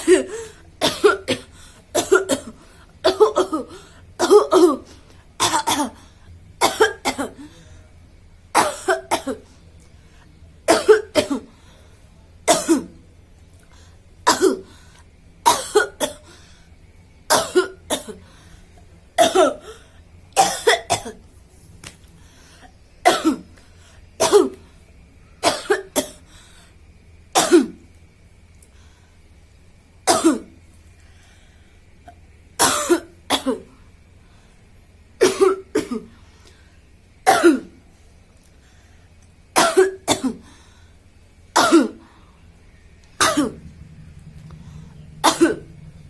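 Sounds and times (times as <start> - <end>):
woman coughing: 0.0 - 6.0, 6.6 - 7.5, 8.6 - 9.4, 10.7 - 11.5, 12.5 - 13.0, 14.3 - 14.7, 15.5 - 16.2, 17.3 - 18.2, 19.2 - 19.7, 20.4 - 21.2, 23.0 - 23.4, 27.4 - 27.8, 30.1 - 30.5, 32.6 - 33.7, 35.2 - 36.1, 37.3 - 37.8, 39.6 - 40.4, 41.6 - 42.0, 43.2 - 43.6, 45.2 - 45.7.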